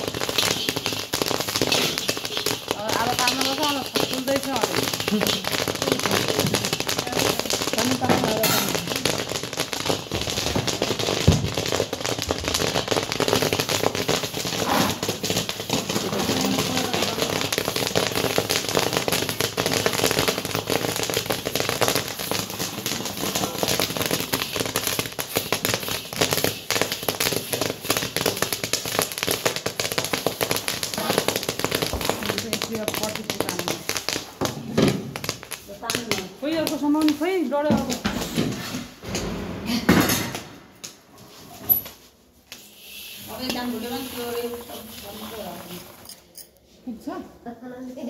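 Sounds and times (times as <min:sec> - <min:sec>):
popcorn popping in a covered pot: 0:00.0 - 0:38.0.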